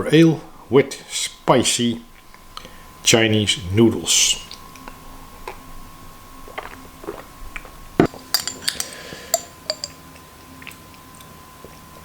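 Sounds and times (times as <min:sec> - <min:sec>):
chopsticks tapping a bowl: 0:08.3 - 0:10.0
short ringing clinks: 0:08.3 - 0:10.0.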